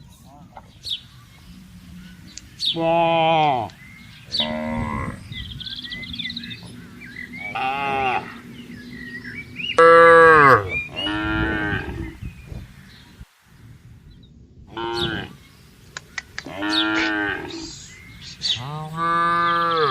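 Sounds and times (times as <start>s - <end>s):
cattle mooing: 2.7s - 5.4s, 6.2s - 9.0s, 9.7s - 12.2s, 14.7s - 15.4s, 16.4s - 19.9s.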